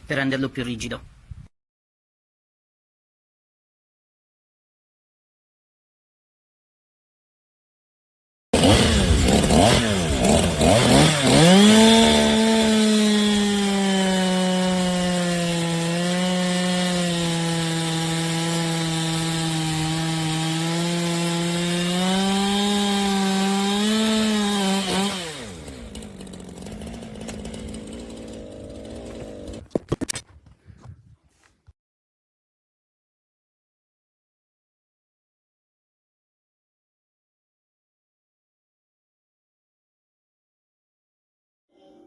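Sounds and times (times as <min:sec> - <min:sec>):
chainsaw cutting wood: 0:08.6 - 0:30.2.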